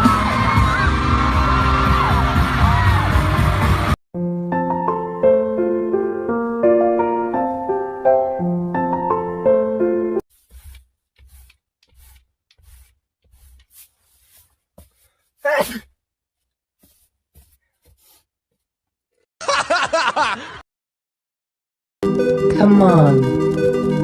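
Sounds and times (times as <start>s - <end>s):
person sneezing: 15.4s - 16.0s.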